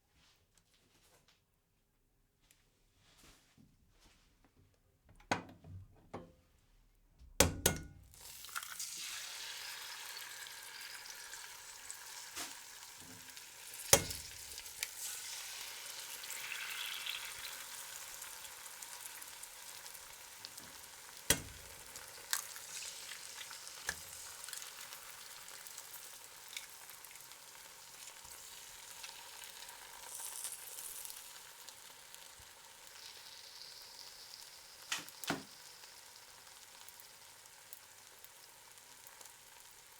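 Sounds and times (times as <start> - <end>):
eggs sizzling in a pan: 8.0 - 39.9.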